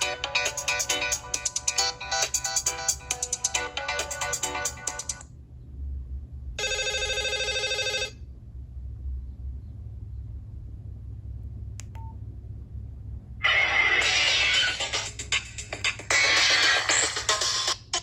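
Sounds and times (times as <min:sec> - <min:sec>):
pulsing chord ringtone: 0:00.0 - 0:05.2
busy electronic ringtone: 0:06.6 - 0:08.2
click: 0:11.8 - 0:12.1.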